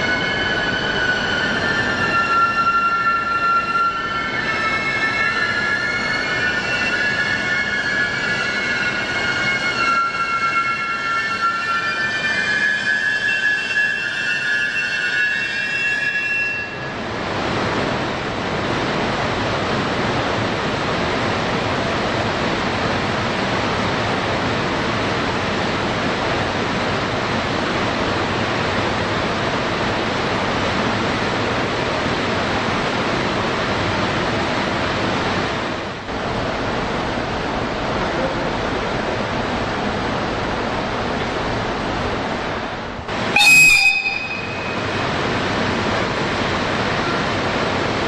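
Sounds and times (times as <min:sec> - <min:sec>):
high squealing tones: 0:00.0 - 0:16.9, 0:43.4 - 0:45.0
train wheels rumbling on rails: 0:00.0 - 0:48.0.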